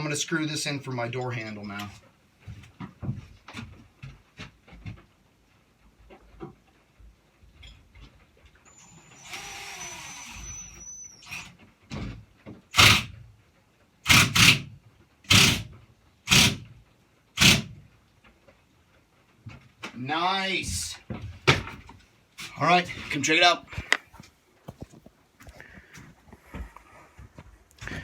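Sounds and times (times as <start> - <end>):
cordless drill whining: 8.7 - 11.6.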